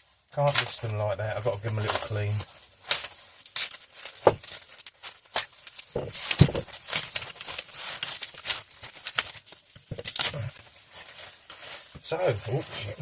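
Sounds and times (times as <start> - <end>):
packaging rustling and crinkling: 0.0 - 13.0
objects knocking down: 6.0 - 6.7.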